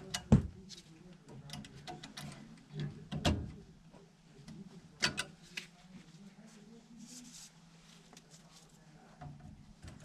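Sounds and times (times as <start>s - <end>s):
tools clicking and knocking: 5.0s - 5.4s.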